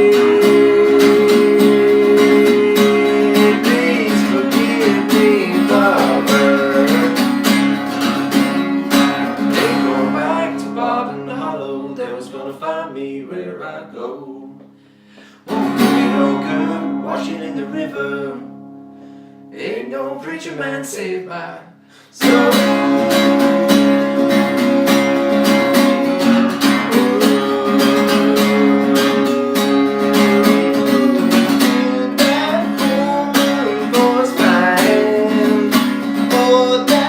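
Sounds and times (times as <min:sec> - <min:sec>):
acoustic guitars strumming: 0:00.0 - 0:37.0.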